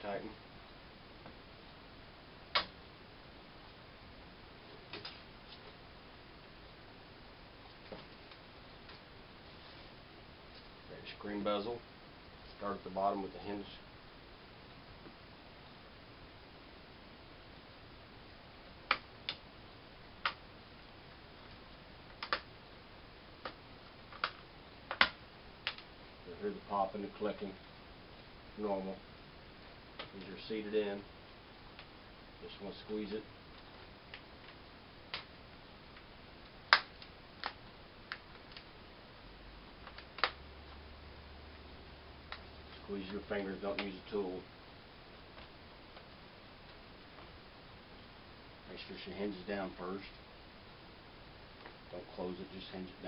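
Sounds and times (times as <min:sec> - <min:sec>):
plastic clips snapping: 0:23.4 - 0:25.8.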